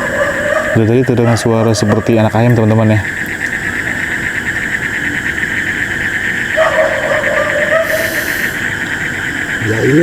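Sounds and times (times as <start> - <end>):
dog howling: 0.0 - 2.3, 6.6 - 8.3
night insects chirring: 0.0 - 10.0.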